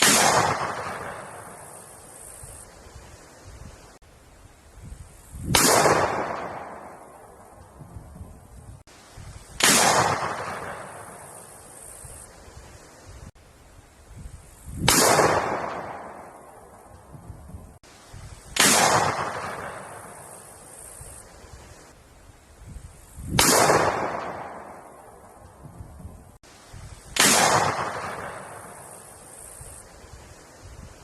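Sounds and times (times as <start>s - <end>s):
gunshots with echo: 0.0s - 1.6s, 5.5s - 7.2s, 9.6s - 11.3s, 14.8s - 16.4s, 18.6s - 20.3s, 23.4s - 25.0s, 27.2s - 28.8s.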